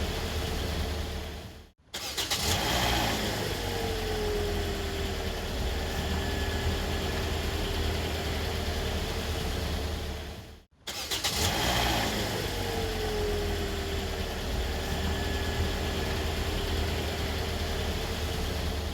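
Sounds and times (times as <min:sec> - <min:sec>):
car engine idling: 0:00.0 - 0:01.7, 0:03.5 - 0:10.6, 0:12.4 - 0:18.9.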